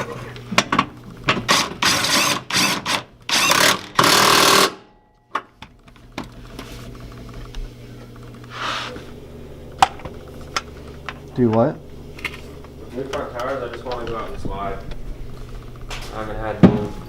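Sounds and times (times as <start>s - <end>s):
power wrench driving bolts: 0.6s - 4.8s.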